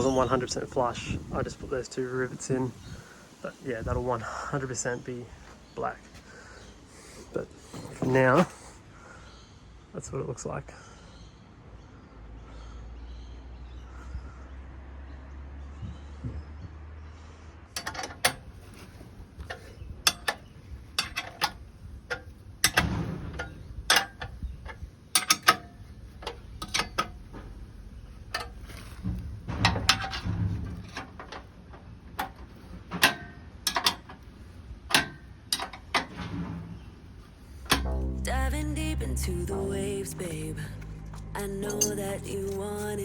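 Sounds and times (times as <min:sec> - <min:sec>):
tools and parts handled: 0:17.8 - 0:27.5, 0:28.3 - 0:36.4
sharp clicks and clunks: 0:17.8 - 0:27.6, 0:28.3 - 0:36.8, 0:37.6 - 0:38.0
low hum: 0:37.4 - 0:43.0.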